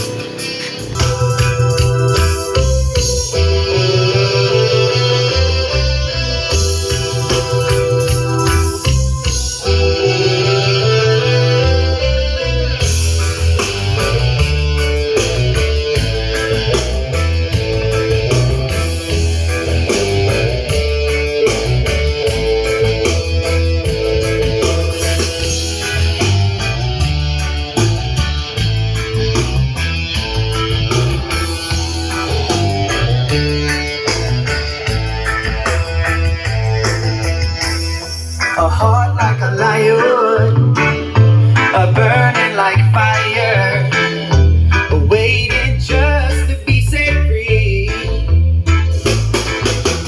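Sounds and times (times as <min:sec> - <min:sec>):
guitar music with heavy bass: 0:00.0 - 0:50.0.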